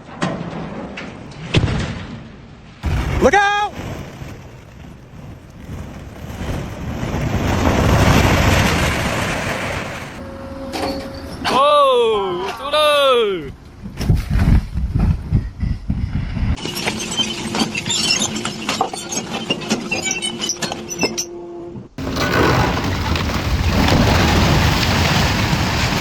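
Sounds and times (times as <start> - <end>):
debris crashing and breaking: 2.8 - 10.2, 22.0 - 26.0.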